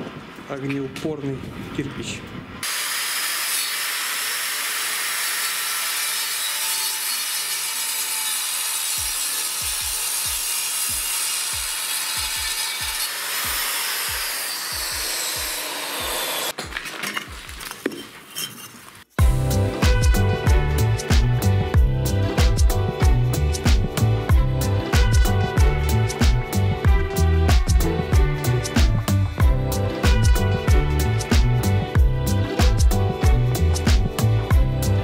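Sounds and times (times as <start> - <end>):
angle grinder cutting metal: 2.6 - 16.6.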